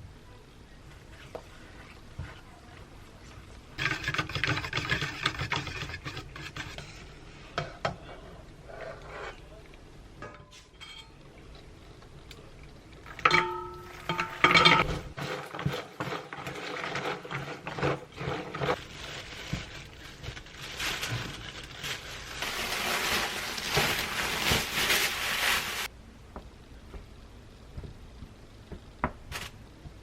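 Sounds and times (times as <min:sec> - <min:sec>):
utensils and cookware scraping: 0:03.8 - 0:09.5, 0:10.2 - 0:11.2, 0:13.1 - 0:25.9
dish clinking: 0:13.1 - 0:14.9.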